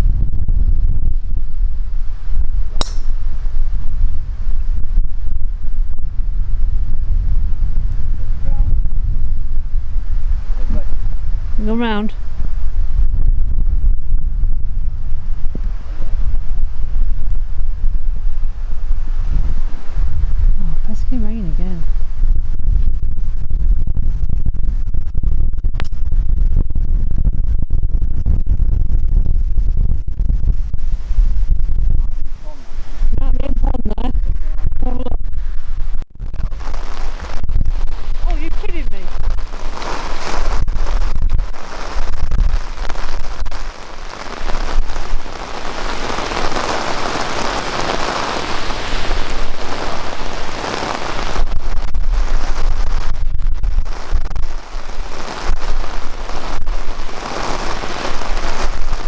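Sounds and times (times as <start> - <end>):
wind buffeting microphone: 0.0 - 59.0
rain falling: 41.6 - 51.6, 54.0 - 59.0.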